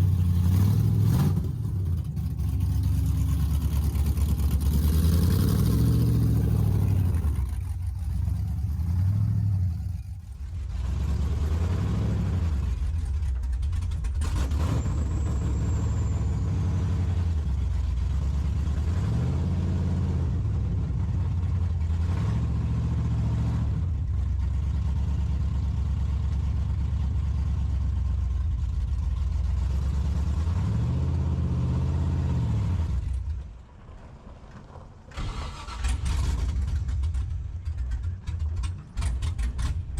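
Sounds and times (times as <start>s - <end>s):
car engine revving: 0.0s - 24.1s, 35.2s - 37.9s.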